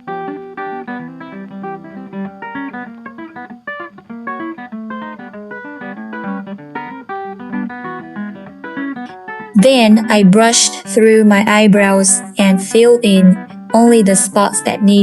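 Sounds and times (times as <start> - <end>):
acoustic guitar picking: 0.0 - 15.0.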